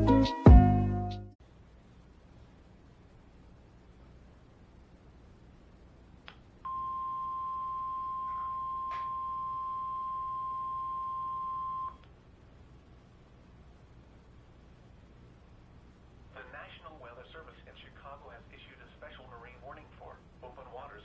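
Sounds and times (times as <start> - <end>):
click: 6.2 - 6.5, 12.0 - 12.2
steady warning alarm beep: 6.7 - 12.0.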